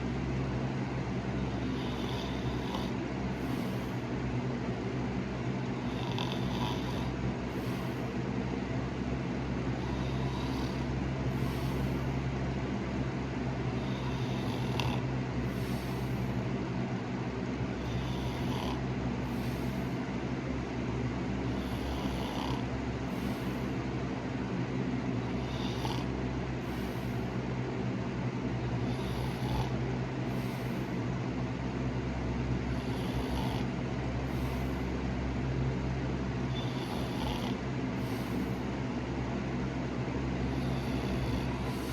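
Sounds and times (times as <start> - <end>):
loud steady low hum: 0.0 - 41.9
soft snoring: 1.3 - 4.1, 5.8 - 8.2, 9.7 - 12.2, 13.7 - 16.4, 17.8 - 20.0, 21.4 - 23.8, 25.2 - 27.4, 28.7 - 31.0, 32.6 - 34.9, 36.4 - 38.6, 40.4 - 41.9.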